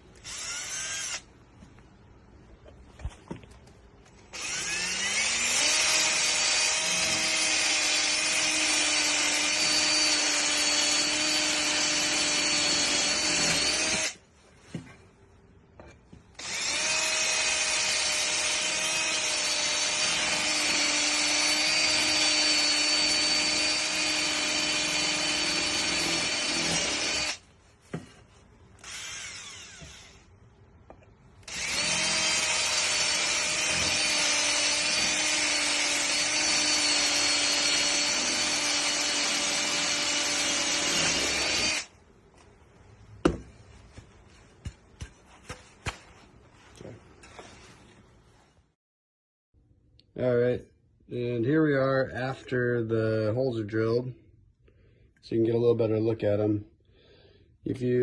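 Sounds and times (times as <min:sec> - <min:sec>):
electric drill boring into metal: 0:00.2 - 0:01.3, 0:04.3 - 0:14.2, 0:16.4 - 0:27.4, 0:28.8 - 0:30.3, 0:31.4 - 0:41.9.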